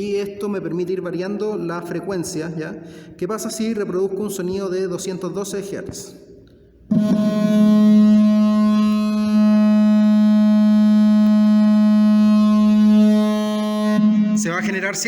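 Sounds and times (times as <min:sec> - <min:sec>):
buzzy steady tone from loudspeaker: 0:06.9 - 0:15.0.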